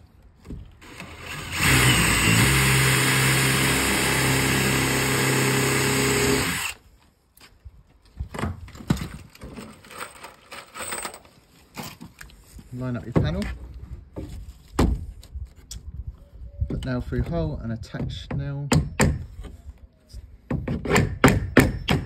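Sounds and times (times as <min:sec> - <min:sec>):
power drill boring into wood: 0:00.8 - 0:06.8.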